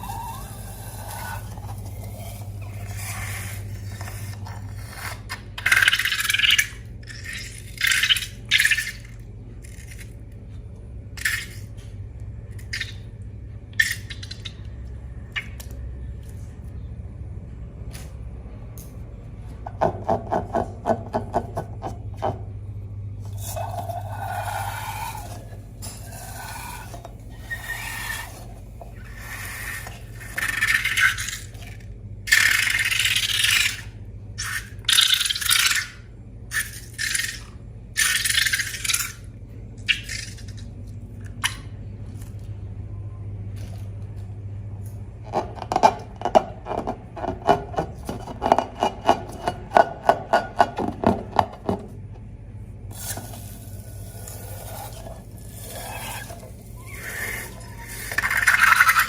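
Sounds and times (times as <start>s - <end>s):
low steady hum: 0.0s - 59.0s
scraping and rattling in a bowl: 23.3s - 36.0s, 45.2s - 51.8s, 53.0s - 59.0s.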